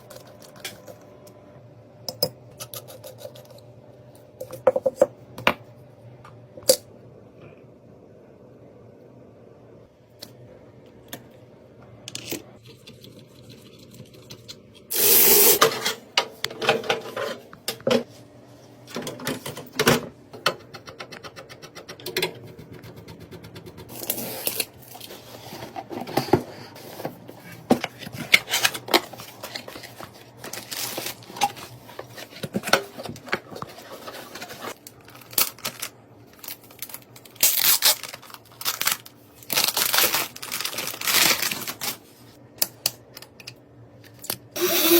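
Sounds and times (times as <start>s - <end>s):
packaging rustling: 27.0s - 42.3s.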